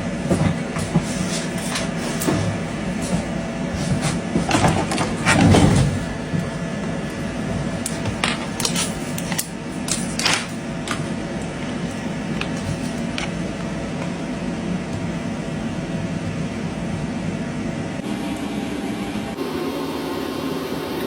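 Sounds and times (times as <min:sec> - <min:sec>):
machine hum: 0:00.0 - 0:21.0.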